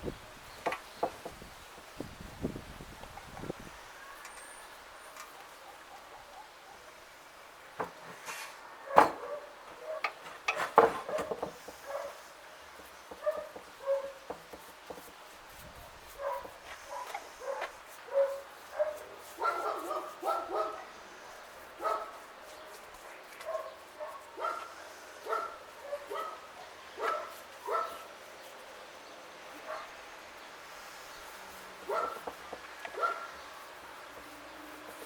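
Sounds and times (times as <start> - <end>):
small dog barking: 13.2 - 14.2, 16.2 - 21.0, 21.8 - 22.2, 23.4 - 28.0, 31.9 - 32.2, 32.9 - 33.3.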